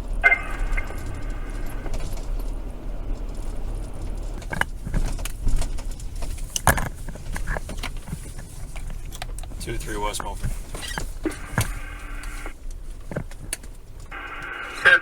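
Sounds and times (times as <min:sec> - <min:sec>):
low car hum: 0:00.0 - 0:15.0
sharp clicks: 0:09.2 - 0:15.0.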